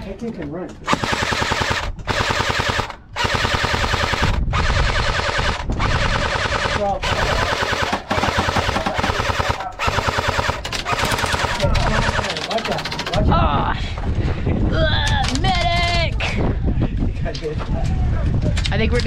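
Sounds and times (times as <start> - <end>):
airsoft gun full-auto bursts: 0.9 - 13.2.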